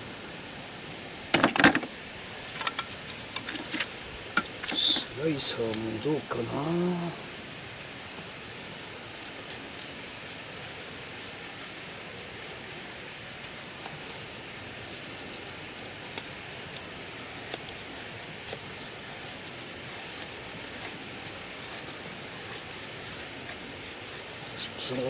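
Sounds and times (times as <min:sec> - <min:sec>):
knife scraping wood: 0:08.8 - 0:25.0.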